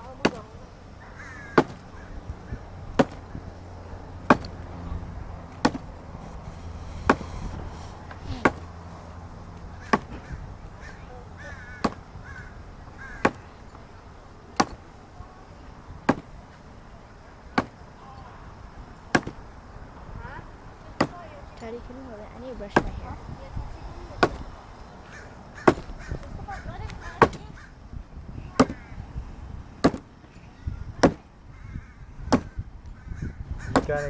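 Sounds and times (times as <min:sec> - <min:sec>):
axe chopping wood: 0:00.2 - 0:00.4, 0:01.6 - 0:01.9, 0:02.9 - 0:03.3, 0:04.3 - 0:04.6, 0:05.6 - 0:07.4, 0:08.2 - 0:08.7, 0:09.8 - 0:10.2, 0:11.8 - 0:12.1, 0:13.2 - 0:13.5, 0:14.6 - 0:14.8, 0:16.1 - 0:16.4, 0:17.6 - 0:17.8, 0:19.1 - 0:19.4, 0:24.2 - 0:24.4, 0:25.6 - 0:26.0, 0:27.2 - 0:27.4, 0:28.6 - 0:28.8, 0:29.8 - 0:30.1, 0:31.0 - 0:31.3, 0:32.3 - 0:32.6, 0:33.7 - 0:34.0.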